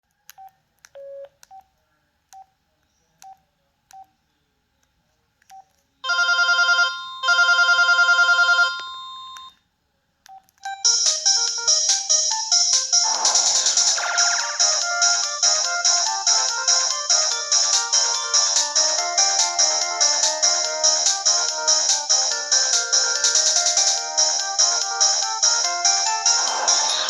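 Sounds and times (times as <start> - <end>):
melodic electronic ringtone: 6.0 - 9.5, 10.7 - 27.0
pulsing electronic ringtone: 6.1 - 9.5, 10.7 - 27.0
phone key beeps: 7.2 - 9.6.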